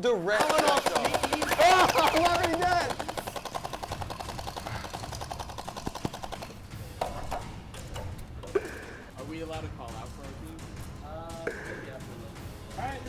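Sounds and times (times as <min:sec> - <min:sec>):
toy blaster rapid firing: 0:00.3 - 0:07.2.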